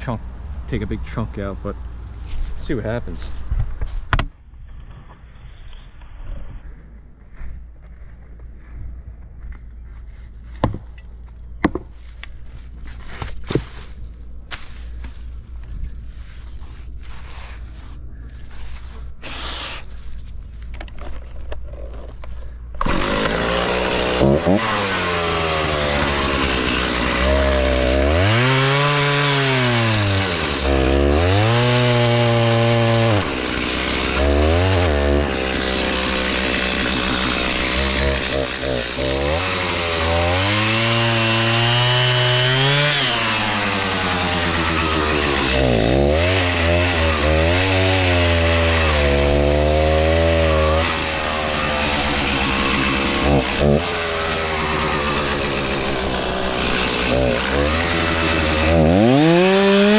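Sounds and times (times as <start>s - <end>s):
chainsaw revving cutting wood: 22.8s - 59.9s.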